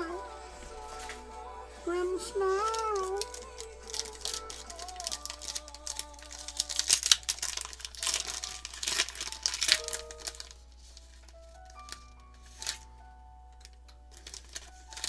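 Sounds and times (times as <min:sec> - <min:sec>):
foil wrapper crinkling and tearing: 0:02.6 - 0:13.0, 0:13.6 - 0:15.0.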